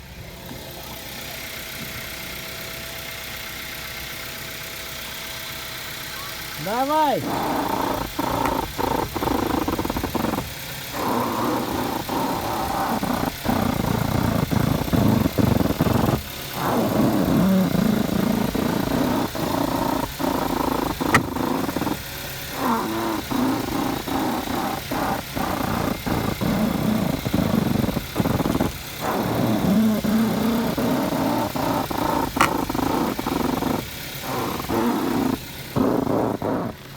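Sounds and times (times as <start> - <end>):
car engine running: 0.0 - 36.9
sharp clicks: 7.2 - 22.0, 22.6 - 36.4.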